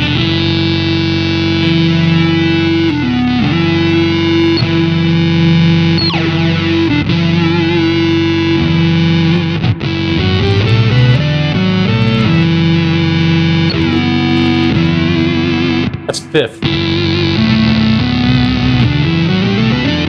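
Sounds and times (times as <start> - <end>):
distorted synth guitar tone: 0.0 - 20.0.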